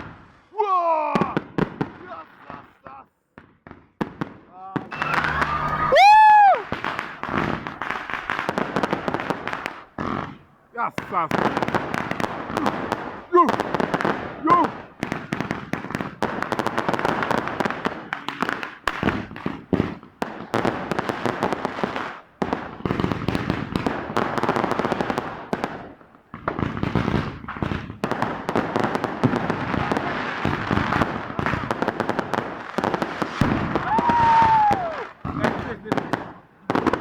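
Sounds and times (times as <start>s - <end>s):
fireworks cracking and banging: 0.0s - 37.0s
crowd voices: 4.9s - 6.6s.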